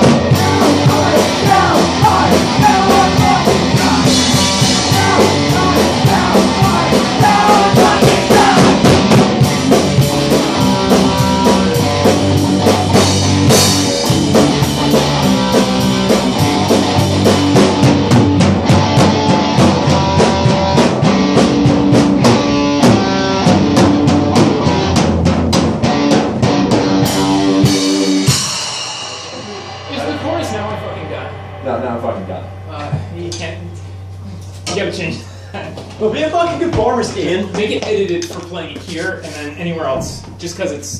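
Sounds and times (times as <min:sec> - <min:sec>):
busy drumming: 0:00.0 - 0:40.9
punk rock band playing: 0:00.0 - 0:40.9.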